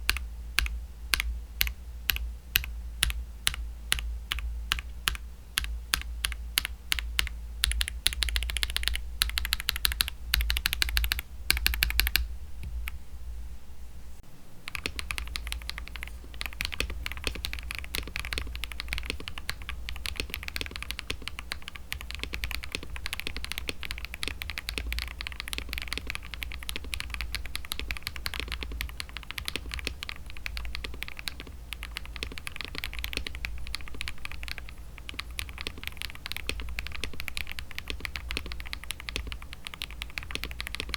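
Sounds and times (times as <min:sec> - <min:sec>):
mechanical keyboard typing: 0:00.0 - 0:13.0, 0:14.7 - 0:40.9.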